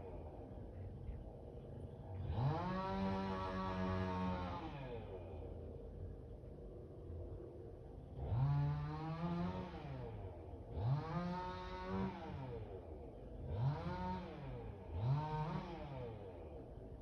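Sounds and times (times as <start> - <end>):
chainsaw engine revving: 13.5 - 16.0.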